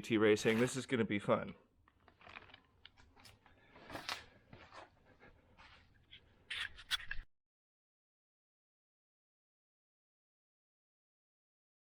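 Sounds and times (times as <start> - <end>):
packaging rustling and clicking: 1.9 - 4.9.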